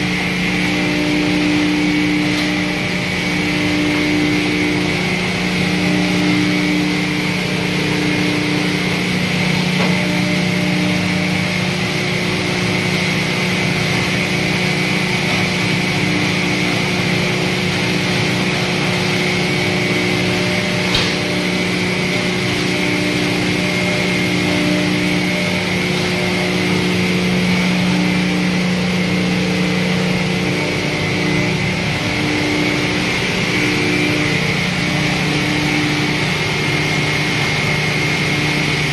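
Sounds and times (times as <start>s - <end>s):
hammer mill drone: 0.0s - 38.9s.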